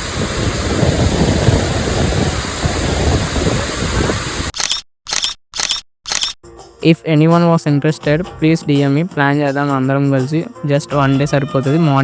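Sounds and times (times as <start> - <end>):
waterfall rushing: 0.0 - 4.5
short sharp bursts: 4.4 - 6.4.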